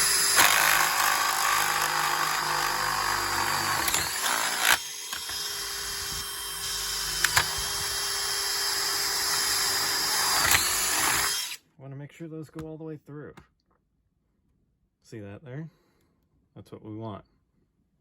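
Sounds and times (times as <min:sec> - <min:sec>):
electric drill whining: 0:00.0 - 0:11.6
sharp clicks: 0:07.1 - 0:08.0.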